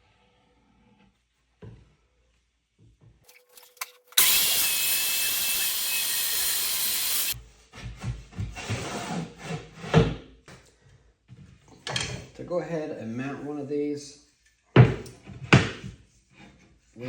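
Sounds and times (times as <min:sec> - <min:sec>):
loud steady hissing: 0:04.2 - 0:07.4.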